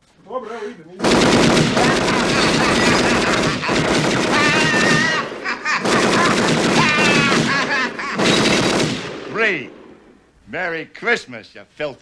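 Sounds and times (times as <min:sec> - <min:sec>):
submachine gun automatic bursts: 0:01.0 - 0:09.3
man crying out: 0:01.7 - 0:08.2.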